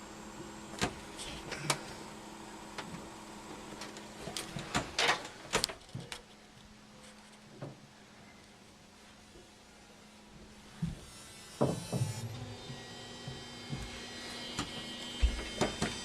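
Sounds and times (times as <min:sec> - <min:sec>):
low hum: 0:08.1 - 0:16.0
tv clicks and knocks: 0:14.6 - 0:16.0.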